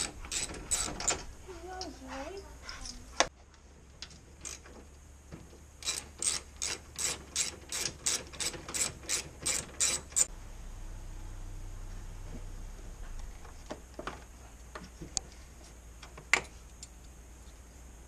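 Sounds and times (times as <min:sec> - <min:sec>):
ratchet wrench clicking: 0:05.8 - 0:10.3.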